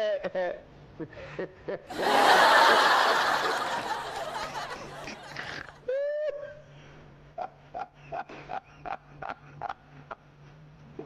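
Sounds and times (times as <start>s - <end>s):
person laughing: 1.0s - 5.6s.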